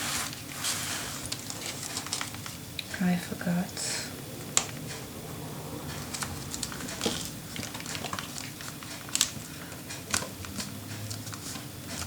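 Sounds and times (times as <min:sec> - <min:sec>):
paper rustling and tapping: 0:06.1 - 0:12.0
sharp paper clicks: 0:06.1 - 0:12.0.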